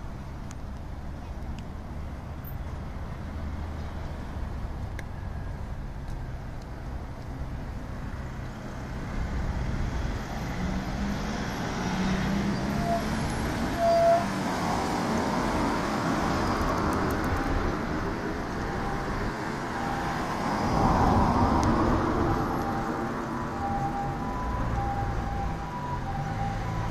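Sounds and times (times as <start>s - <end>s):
rumble of car traffic: 0.0s - 26.9s.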